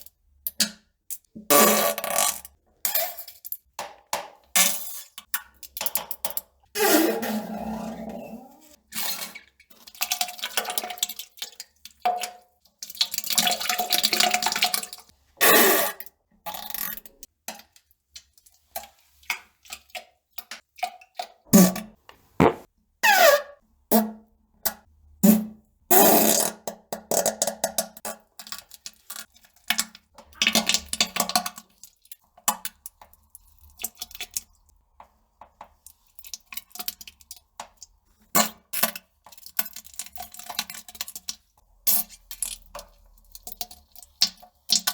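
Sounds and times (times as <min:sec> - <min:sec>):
farts: 0:22.4 - 0:22.7.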